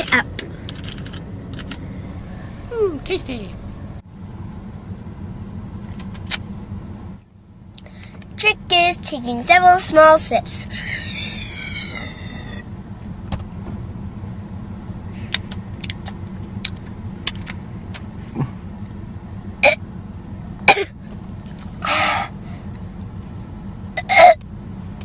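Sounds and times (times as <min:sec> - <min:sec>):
steady low hum: 0:00.0 - 0:25.0
breathy exhale: 0:21.8 - 0:22.8.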